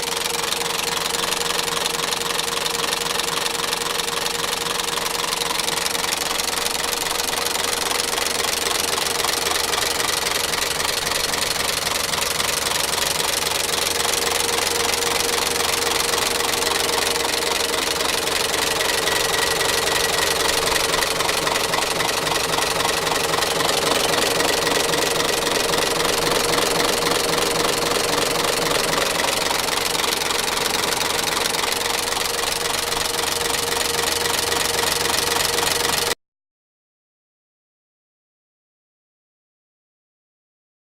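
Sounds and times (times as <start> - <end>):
diesel engine running: 0.0 - 36.2
engine whine: 9.0 - 34.5.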